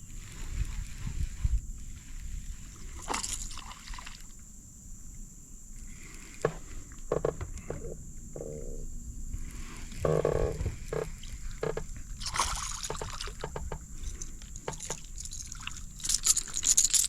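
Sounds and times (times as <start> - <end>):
frogs croaking: 5.8 - 16.6
water sloshing: 9.9 - 17.0.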